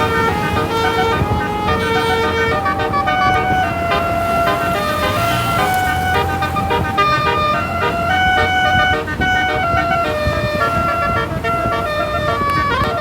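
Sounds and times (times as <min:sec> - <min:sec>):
bus horn playing a melody: 0:00.0 - 0:13.0.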